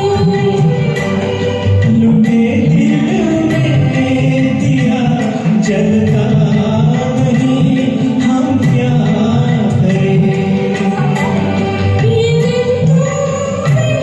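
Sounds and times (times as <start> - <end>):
film song karaoke with singing: 0.0 - 14.0
light percussion: 0.0 - 14.0.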